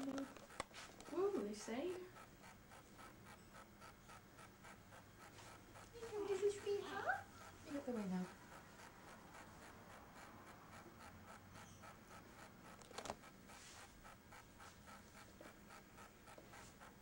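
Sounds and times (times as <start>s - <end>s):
soft regular scratching: 0.0s - 17.0s.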